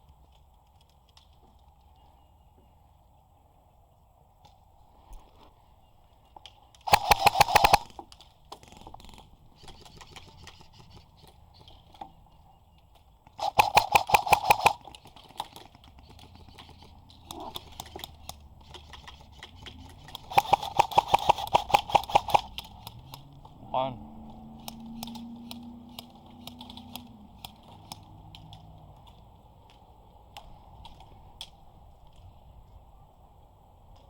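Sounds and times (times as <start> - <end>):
airsoft gun firing bursts: 6.8 - 8.0, 8.7 - 11.7, 13.4 - 23.1.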